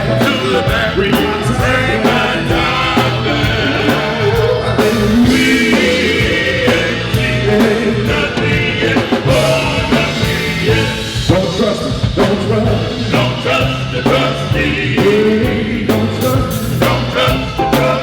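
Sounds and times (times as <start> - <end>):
live band with singing: 0.0 - 18.0.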